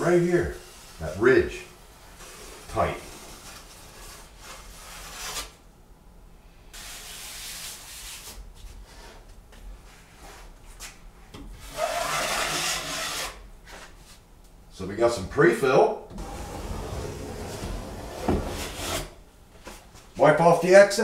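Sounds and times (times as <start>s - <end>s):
taping knife scraping drywall mud: 2.1s - 5.6s, 11.6s - 13.4s.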